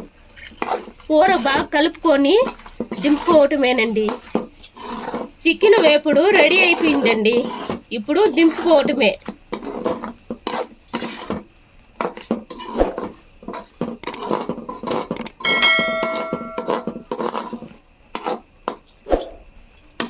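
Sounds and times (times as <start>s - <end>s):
metal spoon scraping in a pan: 0.0s - 19.4s
ringing metallic clang: 15.4s - 17.2s.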